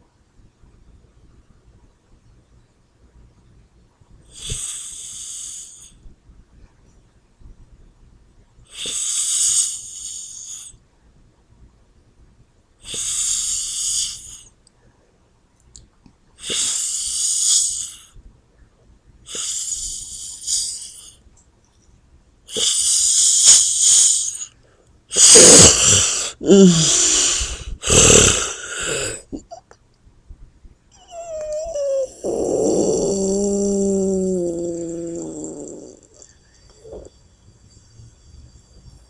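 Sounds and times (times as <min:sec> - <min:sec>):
person snoring: 0:04.3 - 0:05.9, 0:12.8 - 0:14.5, 0:16.4 - 0:18.1, 0:19.3 - 0:21.2, 0:22.5 - 0:24.5, 0:25.1 - 0:29.6, 0:31.0 - 0:37.2.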